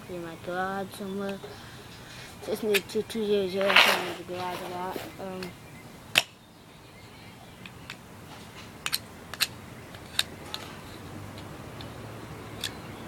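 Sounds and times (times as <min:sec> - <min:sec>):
multi-tool metal clicks: 0:08.8 - 0:10.6.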